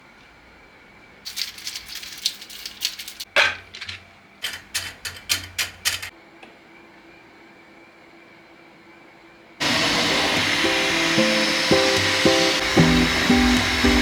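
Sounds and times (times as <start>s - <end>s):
small hard objects clicking and rattling: 1.3s - 6.1s.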